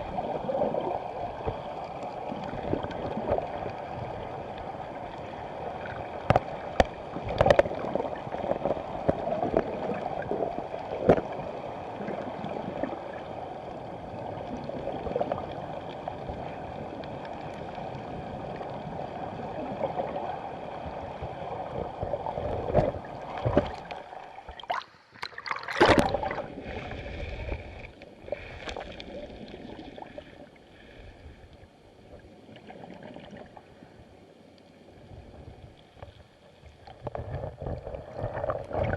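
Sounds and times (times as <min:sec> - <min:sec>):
underwater river rushing: 0:00.0 - 0:38.9
water splashing: 0:21.7 - 0:30.4.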